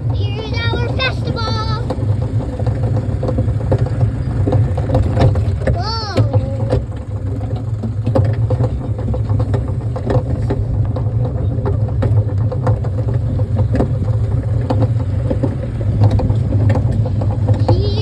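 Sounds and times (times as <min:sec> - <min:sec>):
kiddie train low drone: 0:00.0 - 0:07.9, 0:12.9 - 0:18.0
light clicks and rattles: 0:00.0 - 0:18.0.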